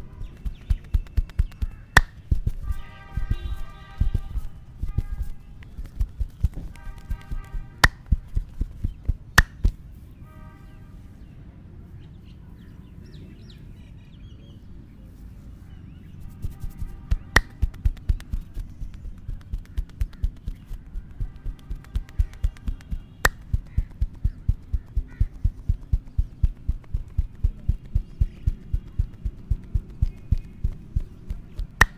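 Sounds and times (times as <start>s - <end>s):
hand chops and slaps: 0.0s - 9.8s, 16.3s - 31.9s
sharp snaps: 0.0s - 9.8s, 16.2s - 31.9s.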